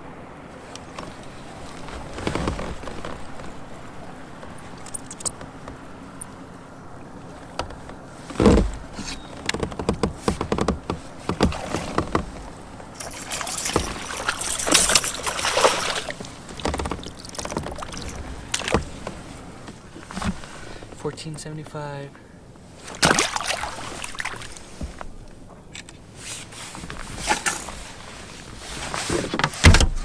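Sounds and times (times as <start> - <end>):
water splashing and sloshing: 0.0 - 30.0
gear knocking on a kayak: 7.3 - 21.0
thump: 29.6 - 30.0.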